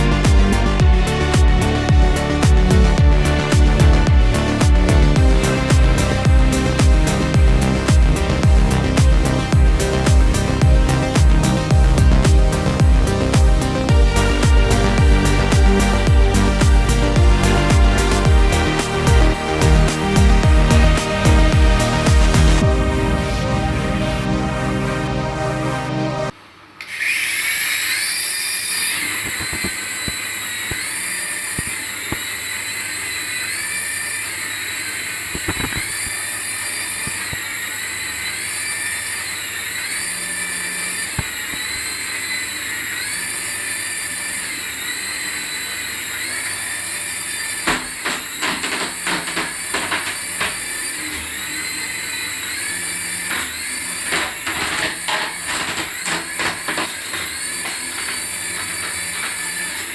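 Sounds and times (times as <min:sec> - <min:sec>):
electric toy whine: 0:00.0 - 0:59.9
clicking and rattling: 0:47.7 - 0:50.8, 0:53.2 - 0:59.9.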